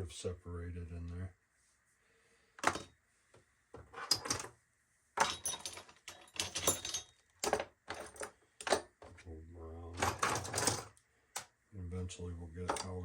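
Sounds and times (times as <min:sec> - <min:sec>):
tools clattering in a drawer: 0:03.8 - 0:04.5, 0:05.2 - 0:09.2, 0:10.0 - 0:10.9.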